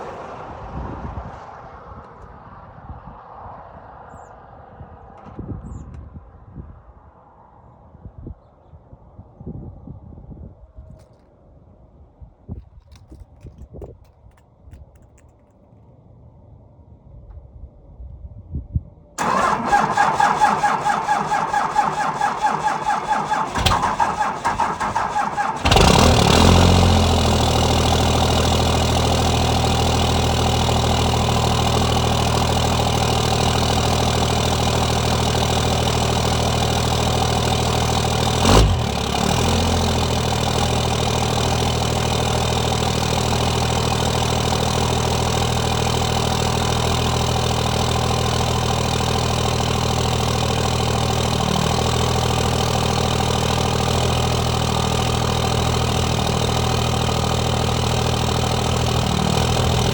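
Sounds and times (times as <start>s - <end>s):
diesel engine idling: 19.2s - 59.9s.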